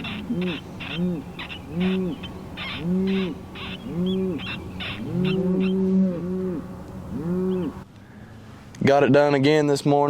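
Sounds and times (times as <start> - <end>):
harsh caw-like cries: 0.0 - 5.9
short hooting calls: 0.0 - 7.8.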